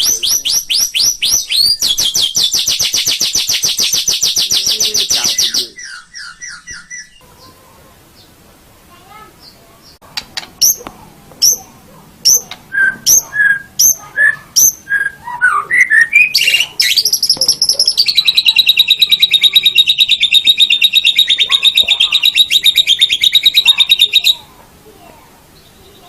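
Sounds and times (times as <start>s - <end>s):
bird singing whistled notes and trill: 0.0s - 7.2s, 11.4s - 24.5s.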